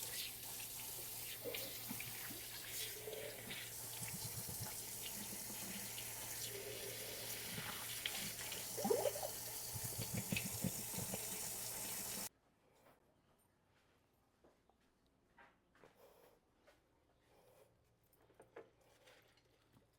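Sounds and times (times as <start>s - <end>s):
tap water running into sink: 0.0s - 12.3s.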